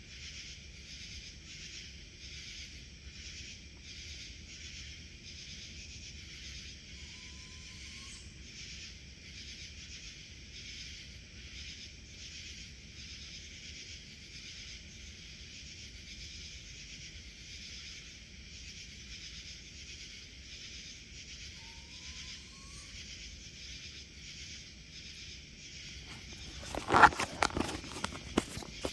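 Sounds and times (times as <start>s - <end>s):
insects buzzing in chorus: 0.0s - 28.9s
footsteps crunching in undergrowth: 26.0s - 28.9s.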